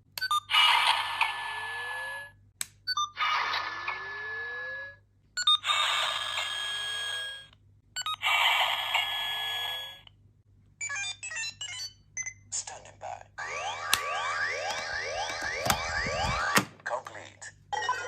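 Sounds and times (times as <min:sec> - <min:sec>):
toy belt electronic sound effects: 0:05.4 - 0:10.0, 0:13.4 - 0:16.6.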